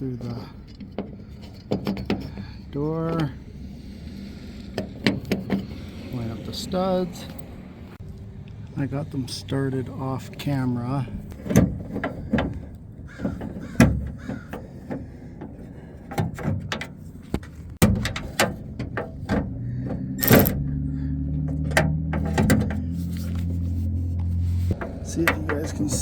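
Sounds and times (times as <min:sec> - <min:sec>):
hand tools clicking on metal: 0:24.7 - 0:26.0.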